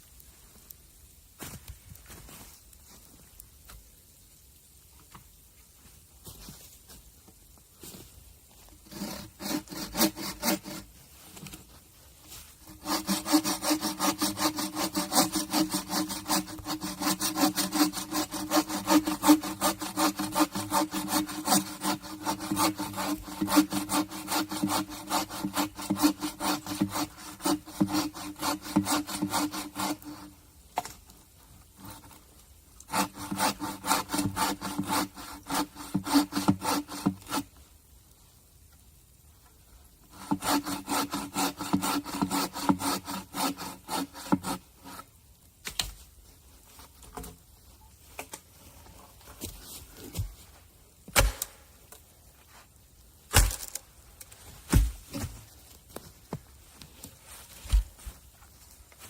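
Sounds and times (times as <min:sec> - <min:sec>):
hand saw cutting wood: 0:08.8 - 0:10.9, 0:12.6 - 0:30.3, 0:31.8 - 0:32.2, 0:32.8 - 0:37.5, 0:40.1 - 0:45.1, 0:51.1 - 0:51.6.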